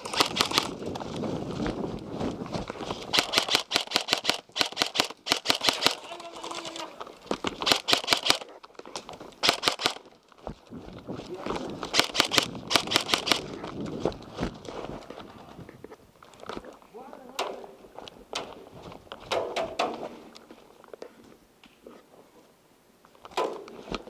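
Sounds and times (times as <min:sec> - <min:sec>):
airsoft guns firing bursts: 0:00.0 - 0:00.7, 0:03.1 - 0:06.0, 0:07.6 - 0:08.5, 0:09.4 - 0:10.0, 0:11.9 - 0:13.4.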